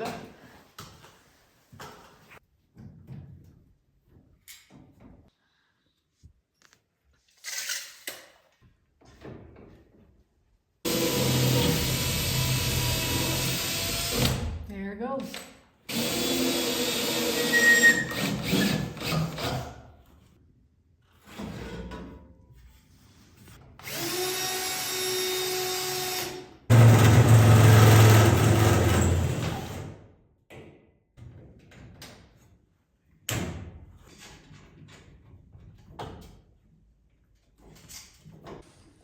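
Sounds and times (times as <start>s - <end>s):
power drill running: 10.9s - 14.4s, 15.9s - 19.1s, 23.8s - 29.8s.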